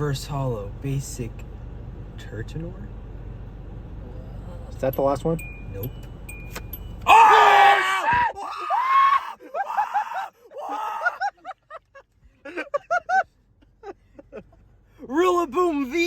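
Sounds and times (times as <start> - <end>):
young men screaming and yelling: 7.0 - 11.5.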